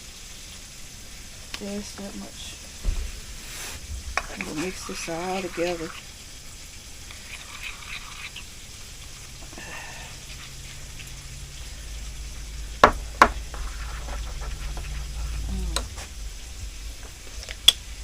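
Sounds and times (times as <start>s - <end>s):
low steady hum: 0.0s - 18.0s
spoon stirring thick glaze: 3.4s - 16.2s.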